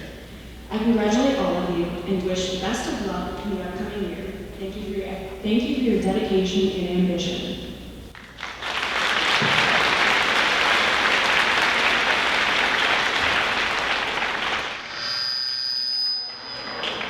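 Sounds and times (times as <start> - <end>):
audience applauding: 8.1 - 14.9
high-pitched ringing tone: 14.8 - 17.0.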